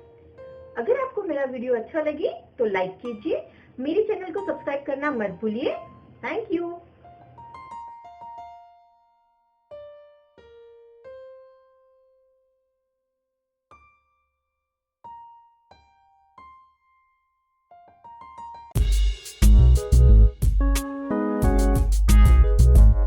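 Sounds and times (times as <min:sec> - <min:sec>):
fuller background music: 0:18.7 - 0:23.0.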